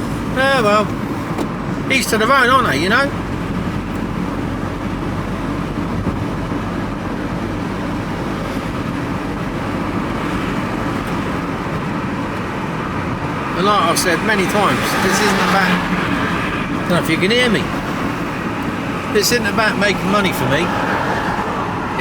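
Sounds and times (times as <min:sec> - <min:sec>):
van engine and road noise: 0:00.0 - 0:22.0.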